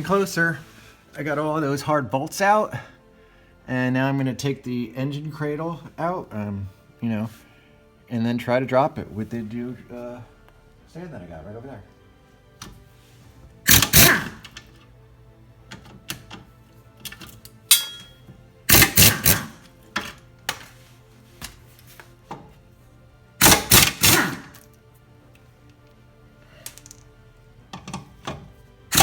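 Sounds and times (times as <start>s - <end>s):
impact wrench hammering: 13.7s - 14.6s, 17.7s - 20.2s, 23.4s - 24.5s, 27.7s - 29.0s
tool clicks and clanks: 13.7s - 14.8s, 15.7s - 20.6s, 23.4s - 24.6s, 27.7s - 29.0s.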